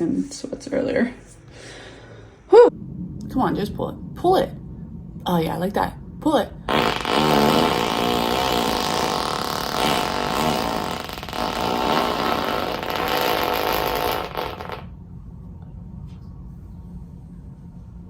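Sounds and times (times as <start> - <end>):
woman's long loud fart: 6.7 - 14.9.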